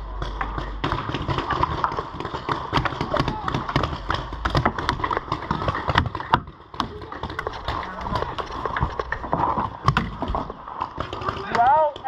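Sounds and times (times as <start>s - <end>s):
paintball markers firing: 0.0s - 9.1s.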